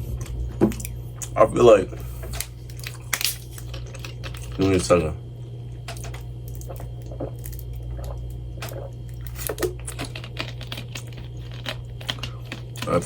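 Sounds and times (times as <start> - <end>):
steady low hum: 0.0 - 13.0
food being chewed: 2.2 - 4.9, 5.6 - 13.0.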